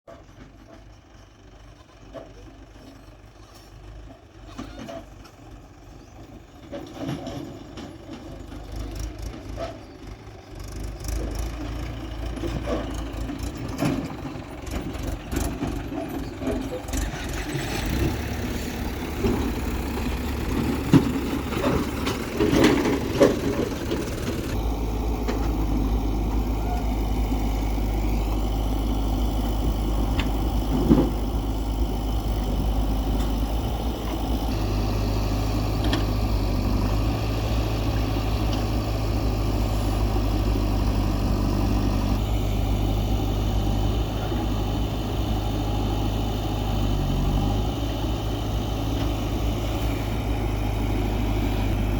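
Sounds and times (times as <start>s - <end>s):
diesel engine running: 0.1s - 51.9s
clanks and knocks: 19.1s - 24.6s, 29.6s - 31.5s.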